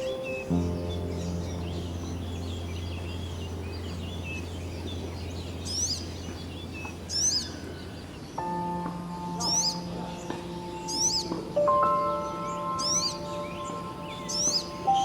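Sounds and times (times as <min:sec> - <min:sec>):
harsh downward-sweeping bird calls: 0:00.0 - 0:08.7, 0:09.3 - 0:15.0
steady low hum: 0:00.0 - 0:11.5
birds chirping and twittering: 0:00.0 - 0:15.0.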